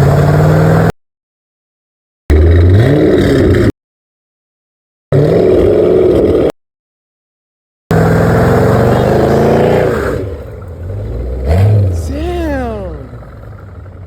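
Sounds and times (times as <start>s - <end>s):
car engine revving: 0.0s - 0.9s, 2.3s - 3.7s, 7.9s - 14.0s.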